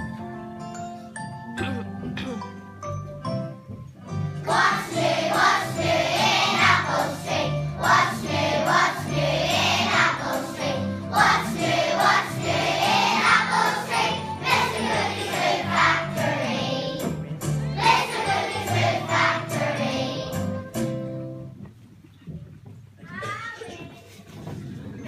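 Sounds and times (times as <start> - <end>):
instrumental accompaniment: 0.0 - 21.8
choir singing: 4.5 - 17.0, 17.8 - 20.3.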